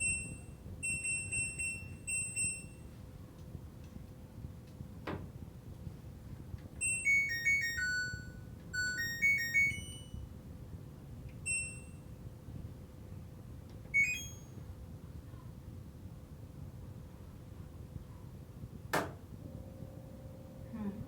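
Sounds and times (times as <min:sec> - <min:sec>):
washing machine beeping tune: 0:00.0 - 0:03.0, 0:06.8 - 0:10.3, 0:11.4 - 0:12.2, 0:13.9 - 0:14.6, 0:19.4 - 0:21.0.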